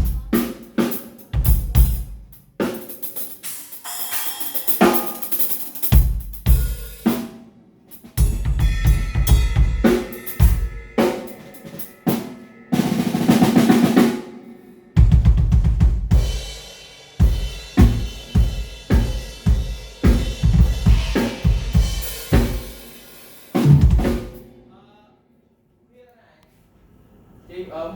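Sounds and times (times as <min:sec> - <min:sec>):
drum kit fills: 0:00.0 - 0:24.7
cymbal crashes: 0:08.2 - 0:24.5.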